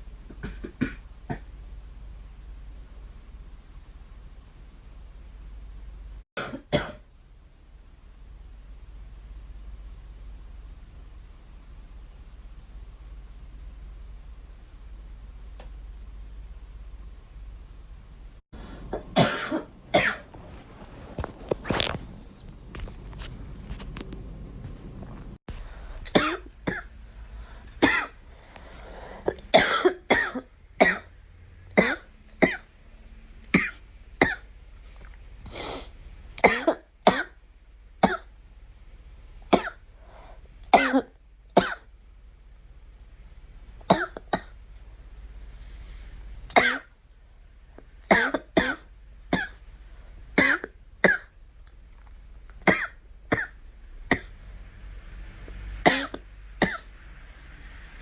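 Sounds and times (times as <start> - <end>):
girl coughing: 6.4 - 7.0, 18.9 - 20.3, 27.8 - 28.2, 29.3 - 31.1.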